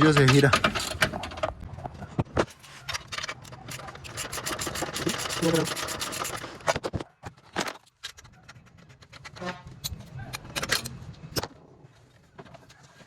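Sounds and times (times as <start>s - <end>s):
ratchet wrench clicking: 3.4s - 6.5s
metallic clicks of tools on bolt: 9.8s - 11.5s.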